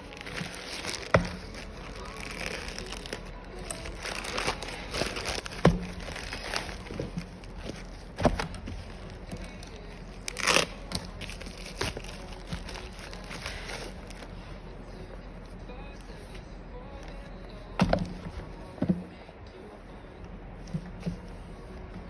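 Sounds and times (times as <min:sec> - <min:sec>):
packaging crinkling and rustling: 0:00.0 - 0:14.4.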